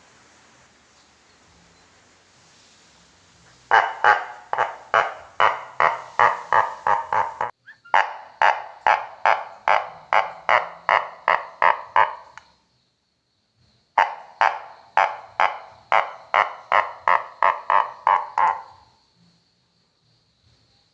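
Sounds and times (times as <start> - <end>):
tin-can frog toy croaking: 3.7 - 12.4, 14.0 - 18.8.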